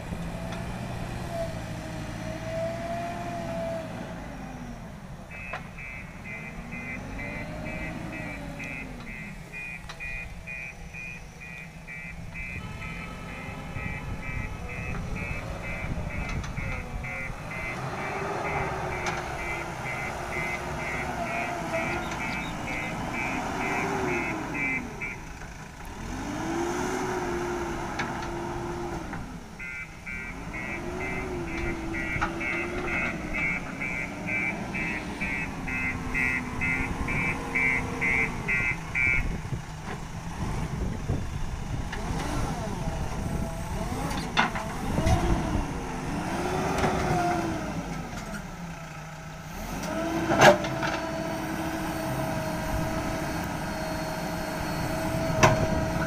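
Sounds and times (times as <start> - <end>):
diesel engine revving: 0.0 - 56.0
reversing alarm beeping: 5.3 - 25.2, 29.6 - 39.4, 51.5 - 56.0.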